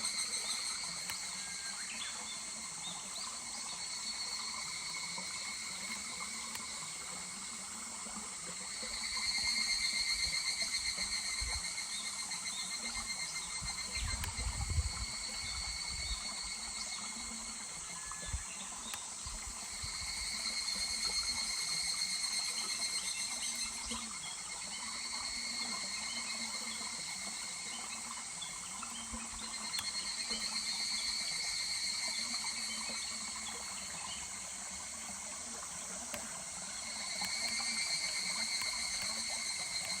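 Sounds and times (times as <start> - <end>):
cicadas calling: 0.0 - 40.0
small stream rushing: 0.0 - 40.0.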